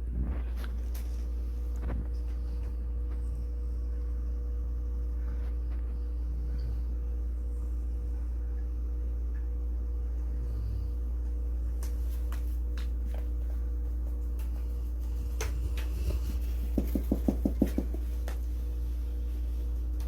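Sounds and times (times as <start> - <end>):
low hum: 0.0 - 20.0
dog snoring: 10.2 - 11.2.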